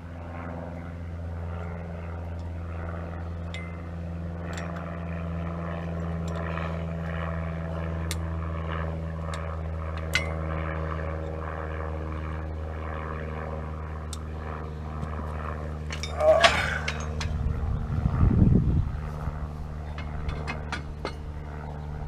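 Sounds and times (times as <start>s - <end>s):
low motor drone: 0.0s - 22.0s.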